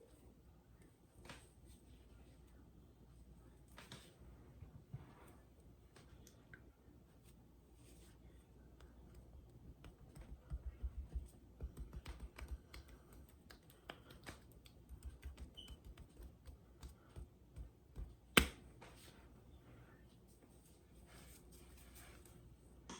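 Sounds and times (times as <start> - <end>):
hands tapping and rubbing skin: 8.8 - 19.0.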